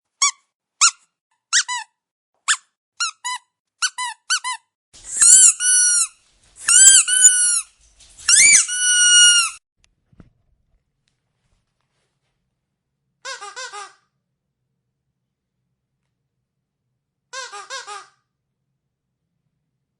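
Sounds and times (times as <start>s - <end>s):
dog's squeaky toy squeaking: 0.2s - 9.6s, 13.2s - 14.0s, 17.4s - 18.2s.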